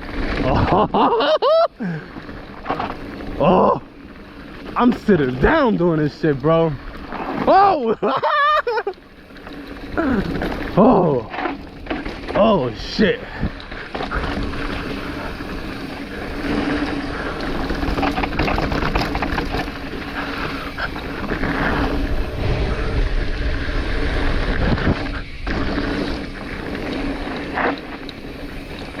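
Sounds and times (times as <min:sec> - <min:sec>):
bike rattling and clattering: 0:00.0 - 0:29.0
tyres rumbling on trail: 0:00.0 - 0:29.0
wind rushing over microphone: 0:13.3 - 0:29.0.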